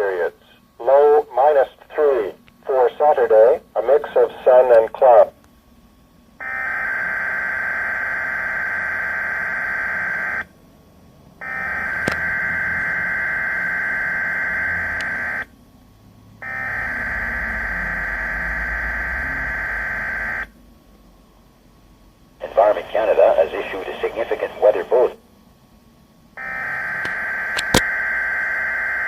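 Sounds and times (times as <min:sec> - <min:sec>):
loud buzzing alert tone: 0:11.4 - 0:15.5, 0:16.4 - 0:20.5, 0:26.4 - 0:29.0.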